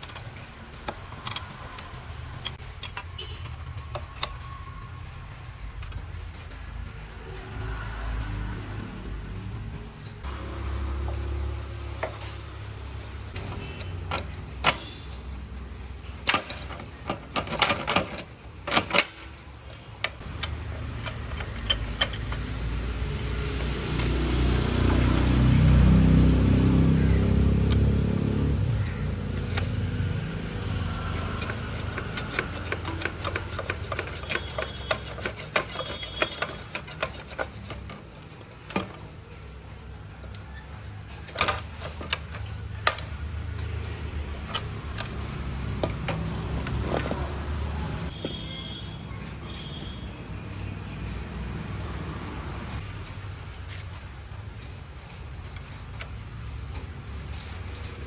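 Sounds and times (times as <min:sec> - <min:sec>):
hand tools clinking on metal: 0:00.0 - 0:04.5, 0:11.8 - 0:48.9.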